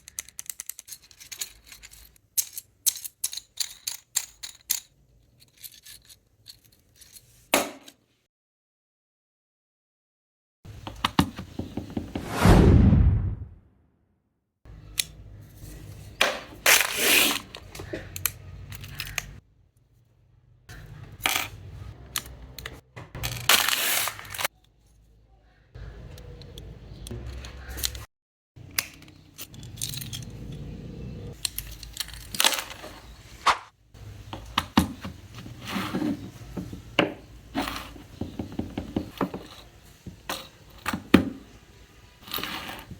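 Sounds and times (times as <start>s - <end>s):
metallic clinks and jangles: 0.0s - 7.4s, 29.0s - 32.4s
brief scraping: 12.2s - 13.6s.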